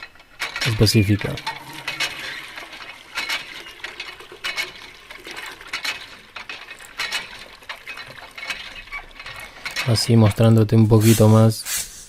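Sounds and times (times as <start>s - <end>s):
sharp clicks and clinks: 0.0s - 10.4s
faint hiss: 10.2s - 12.0s.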